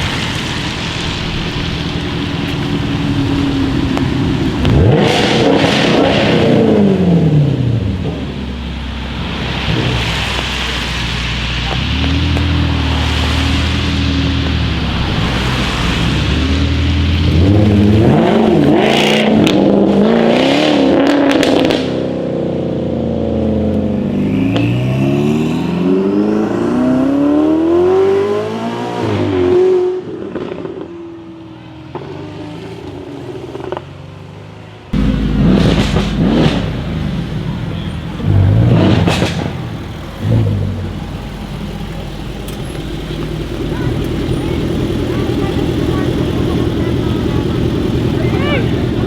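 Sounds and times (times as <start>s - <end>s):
exhaust crackles and bangs: 0.0s - 19.7s, 35.0s - 49.0s
car engine revving and accelerating: 0.0s - 30.8s, 35.0s - 49.0s.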